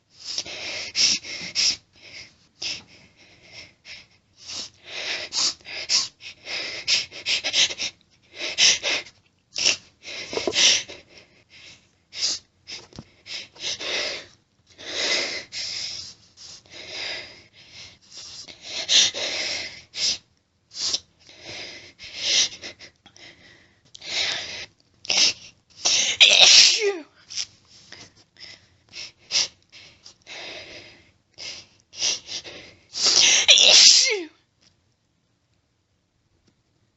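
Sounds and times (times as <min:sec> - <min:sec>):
woman sneezing: 0:25.9 - 0:27.1, 0:33.0 - 0:34.3.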